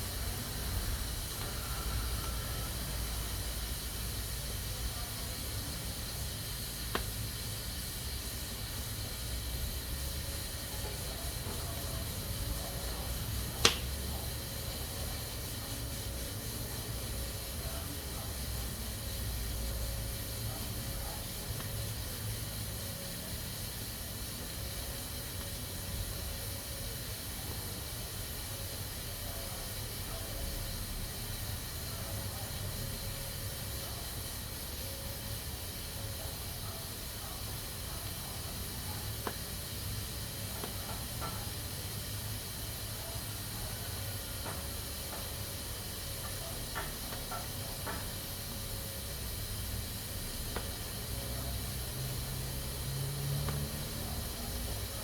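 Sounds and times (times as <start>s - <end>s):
pressure cooker hissing: 0.0s - 55.0s
sharp click: 13.6s - 13.9s.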